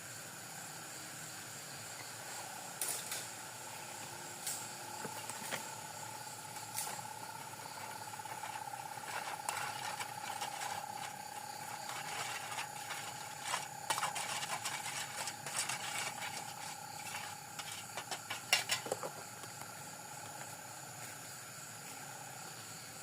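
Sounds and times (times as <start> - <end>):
insect trilling: 3.6 - 20.2.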